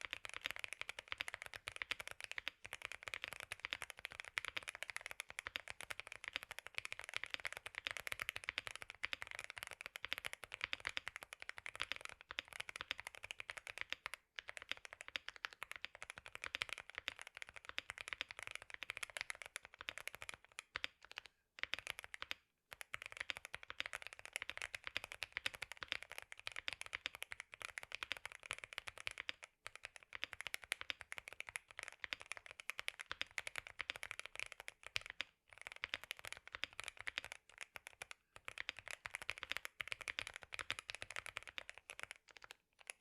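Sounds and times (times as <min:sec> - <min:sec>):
mechanical keyboard typing: 0:00.0 - 0:43.0.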